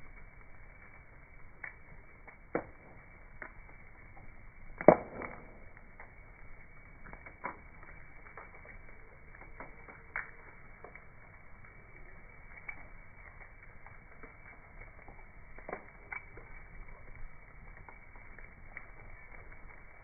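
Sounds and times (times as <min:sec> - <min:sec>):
bonfire crackling: 0:00.0 - 0:20.0
loud pop from fire: 0:01.6 - 0:06.2.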